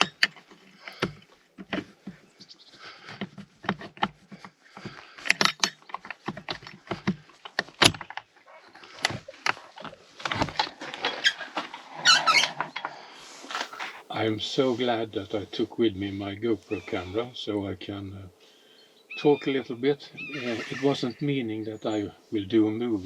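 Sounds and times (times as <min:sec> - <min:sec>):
equipment handling clicks and knocks: 0:05.2 - 0:08.3.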